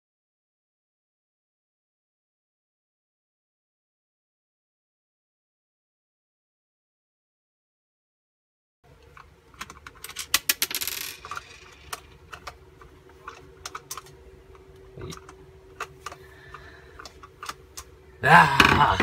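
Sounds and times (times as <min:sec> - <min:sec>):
faint steady hum: 0:08.8 - 0:19.0.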